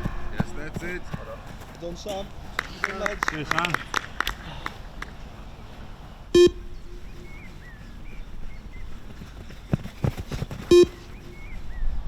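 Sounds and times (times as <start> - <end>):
dull thumps: 7.3 - 11.3.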